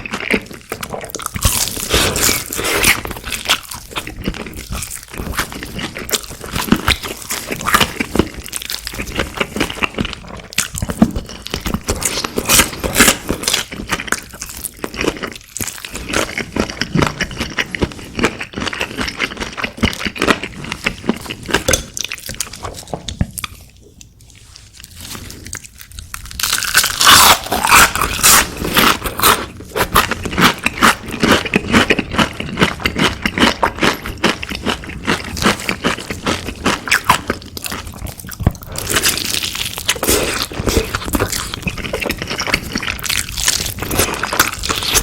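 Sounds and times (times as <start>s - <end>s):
crunching and chewing crispy food: 0.0s - 45.0s.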